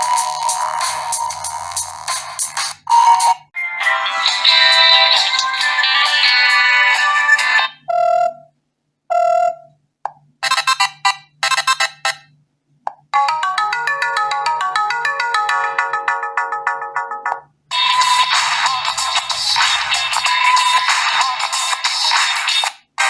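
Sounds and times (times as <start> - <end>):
synthesized ringtone melody: 0.0 - 2.0, 3.0 - 7.8, 13.2 - 22.2
loud phone tone: 3.1 - 8.3, 17.7 - 21.5.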